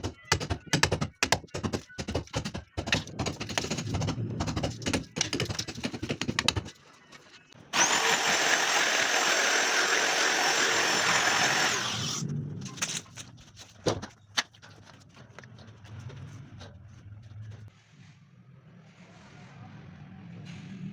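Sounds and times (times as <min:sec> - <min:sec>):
rapid tapping: 0:00.0 - 0:06.8
electric drill grinding into wall: 0:07.7 - 0:12.2.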